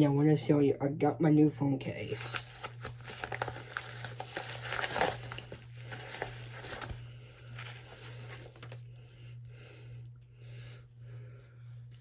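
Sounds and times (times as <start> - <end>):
steady low hum: 0.0 - 12.0
packaging rustling: 2.2 - 8.9.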